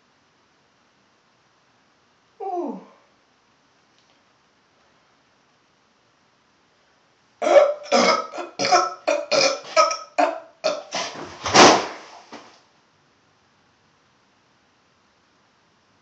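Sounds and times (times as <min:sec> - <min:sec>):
boy burping: 0:07.4 - 0:11.0.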